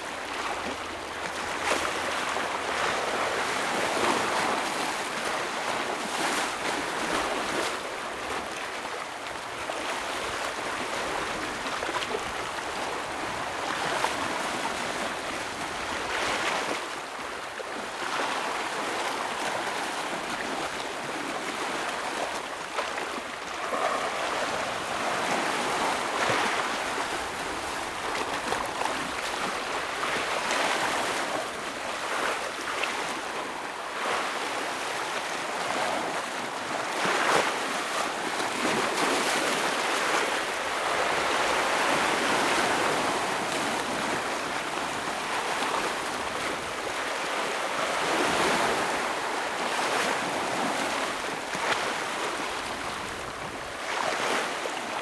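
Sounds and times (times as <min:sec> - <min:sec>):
waves breaking over rocks: 0:21.5 - 0:31.3.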